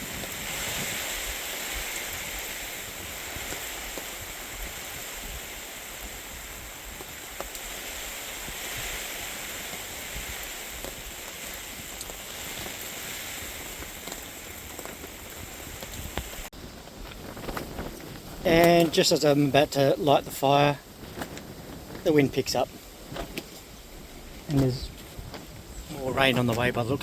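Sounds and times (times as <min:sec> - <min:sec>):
steady rain falling: 0:00.0 - 0:27.0
wind rumbling on microphone: 0:00.0 - 0:27.0.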